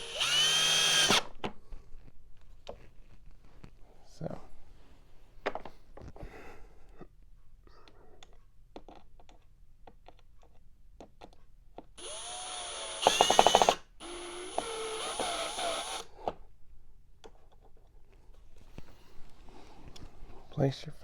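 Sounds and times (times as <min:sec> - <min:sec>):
power drill motor whining: 0:00.0 - 0:01.3, 0:12.0 - 0:16.1.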